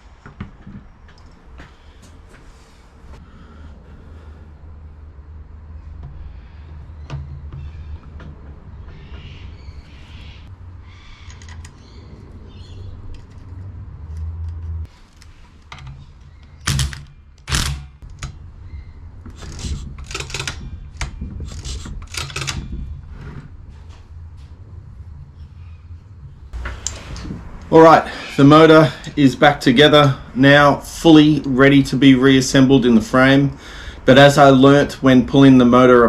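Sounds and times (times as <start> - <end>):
steady low hum: 0.0 - 35.1
hand tools clicking and knocking: 19.3 - 22.7.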